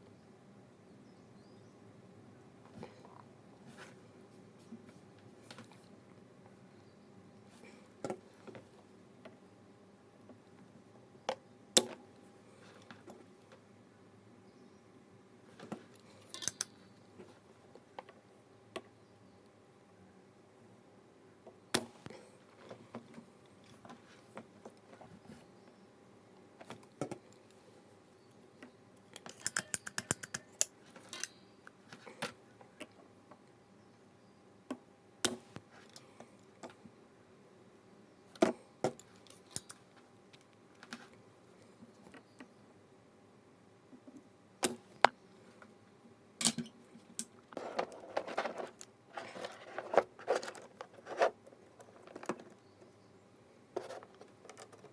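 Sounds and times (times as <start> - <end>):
plastic keyboard parts clicking: 29.2 - 31.3.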